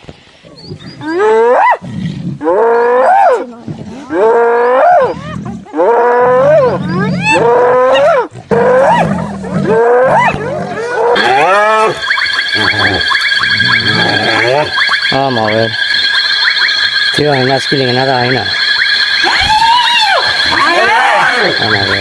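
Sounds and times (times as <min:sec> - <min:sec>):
hyenas calling: 0:04.1 - 0:22.0
steady high tones: 0:11.2 - 0:22.0.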